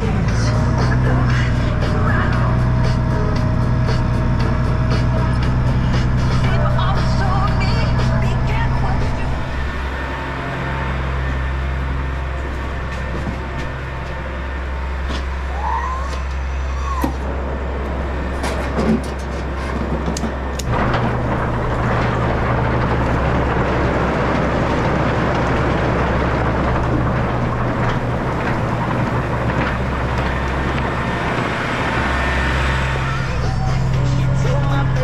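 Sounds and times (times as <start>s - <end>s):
farm machinery engine droning: 0.0s - 35.0s
clicks and squeaks: 18.4s - 35.0s.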